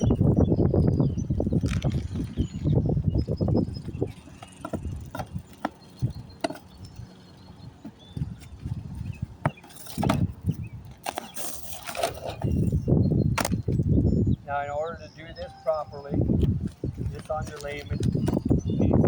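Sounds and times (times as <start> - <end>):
shingles scraping and tearing: 7.9 - 13.7.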